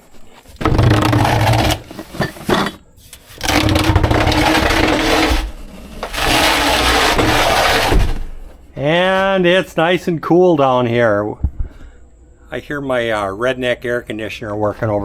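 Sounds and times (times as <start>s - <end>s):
body rubbing over rough surfaces: 0.0s - 9.0s
wood scraping against wood: 0.0s - 9.0s.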